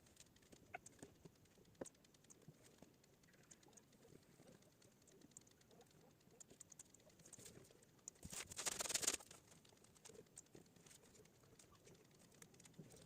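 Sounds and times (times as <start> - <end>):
faint computer mouse clicks: 0.0 - 13.0
short scratchy rustle: 8.2 - 9.4.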